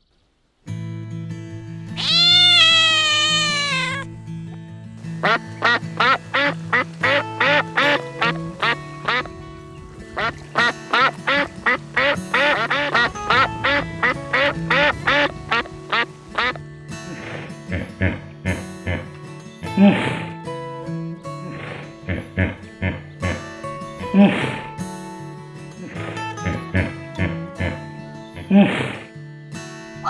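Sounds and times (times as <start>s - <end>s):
background music: 0.8s - 30.0s
cat meowing: 2.0s - 4.1s
duck quacking: 2.0s - 4.1s, 5.2s - 9.3s, 10.2s - 20.3s, 21.5s - 24.7s, 25.8s - 29.1s.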